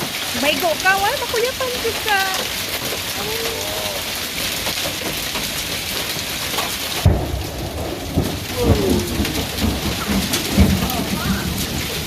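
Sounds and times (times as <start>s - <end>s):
hail and rain pelting down: 0.0s - 12.0s
heavy low thuds: 7.0s - 12.0s.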